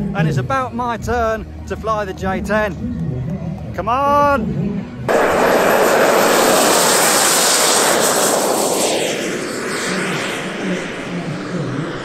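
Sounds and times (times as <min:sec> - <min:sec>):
model jet flying past: 0:05.1 - 0:12.0.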